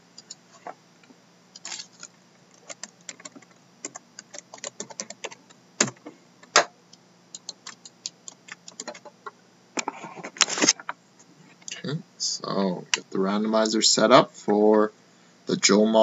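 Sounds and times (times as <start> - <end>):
keyboard typing: 2.5 - 6.6, 7.3 - 9.1.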